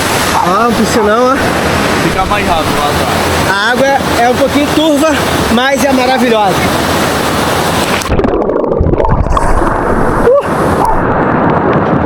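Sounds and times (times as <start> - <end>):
waterfall rushing water: 0.0 - 8.1
wind buffeting microphone: 0.0 - 12.0.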